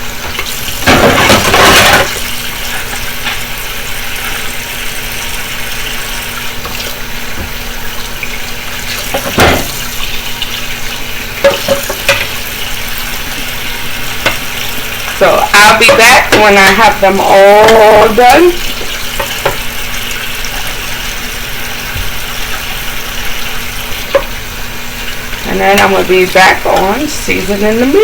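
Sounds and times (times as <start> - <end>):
dishes clinking: 0.8 - 2.2, 9.1 - 9.9, 11.4 - 12.4
tap running into a sink: 6.3 - 7.6, 21.8 - 23.1
dishware knocking: 9.2 - 9.8.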